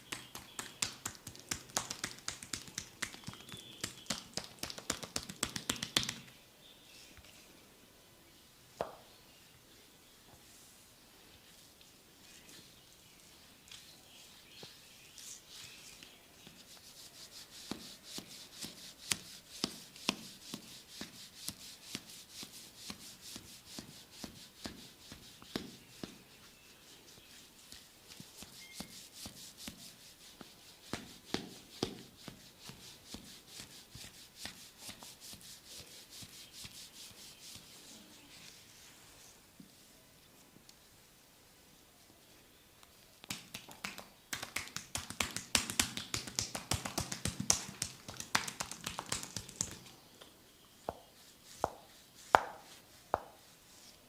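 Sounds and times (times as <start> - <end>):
slapping and rubbing on oiled skin: 0.0 - 6.4, 16.5 - 26.2, 27.4 - 37.7, 43.2 - 49.9.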